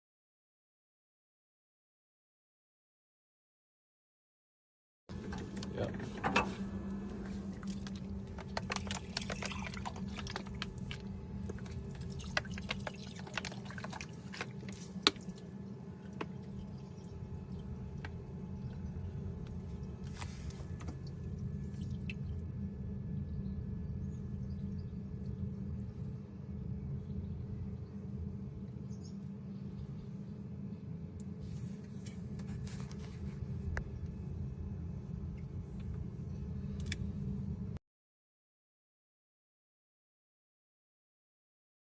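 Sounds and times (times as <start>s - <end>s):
engine ticks and clicks: 5.1s - 6.5s
engine running with misfire: 5.1s - 8.9s
car engine humming: 5.1s - 22.4s.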